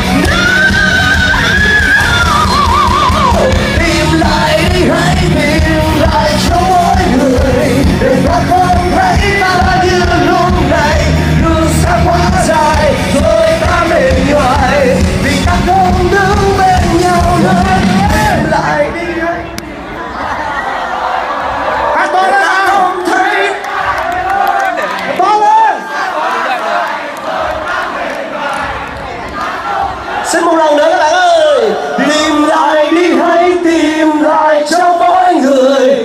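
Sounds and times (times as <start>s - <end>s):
rock band playing live: 0.0s - 19.8s
wordless vocal melody: 0.0s - 19.8s.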